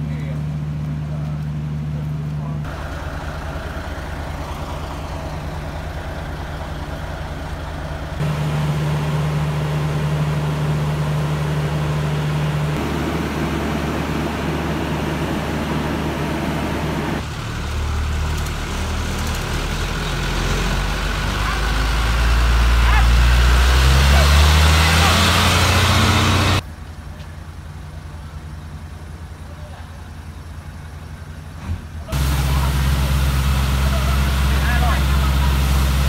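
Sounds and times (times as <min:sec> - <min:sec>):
vehicle engine humming: 0:00.0 - 0:36.0
noisy wash: 0:32.2 - 0:36.0.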